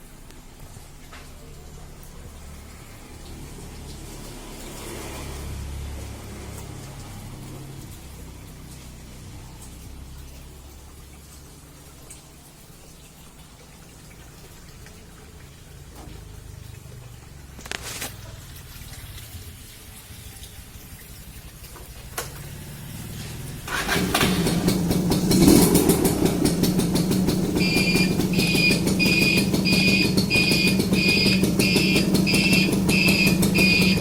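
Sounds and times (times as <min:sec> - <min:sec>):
moped engine starting and revving: 0:02.5 - 0:08.3, 0:22.0 - 0:34.0.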